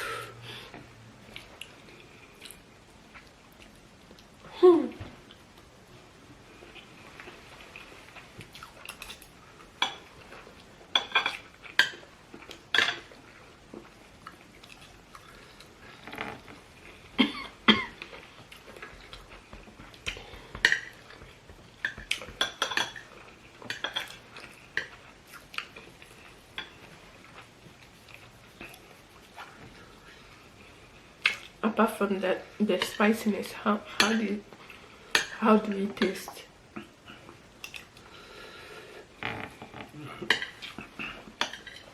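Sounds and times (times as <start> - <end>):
cutlery clinking on plates: 11.0 - 12.0, 12.7 - 13.1, 21.8 - 24.2, 41.4 - 41.9.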